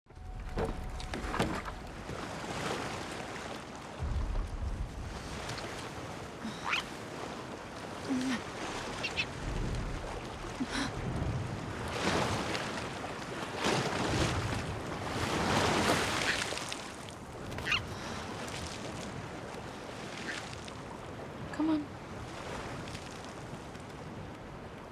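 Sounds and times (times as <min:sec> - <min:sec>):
ocean surf: 0:00.1 - 0:24.9
seagull calling: 0:06.4 - 0:07.0, 0:08.9 - 0:09.4, 0:17.6 - 0:18.0.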